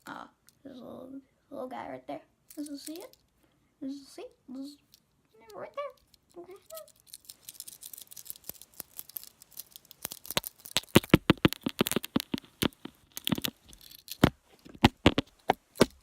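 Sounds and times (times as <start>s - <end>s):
plastic crackling and clicking: 4.9s - 16.0s.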